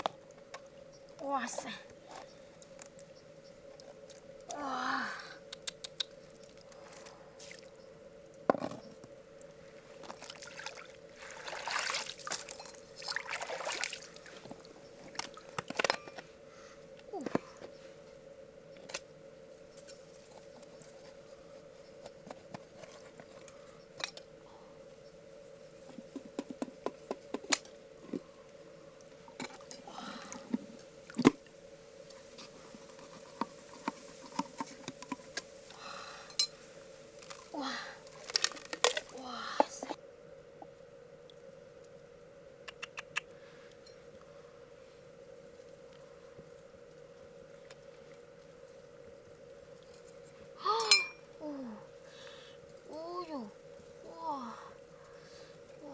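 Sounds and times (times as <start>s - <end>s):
faint steady hum: 0.0s - 55.9s
wet squishes: 10.0s - 14.5s.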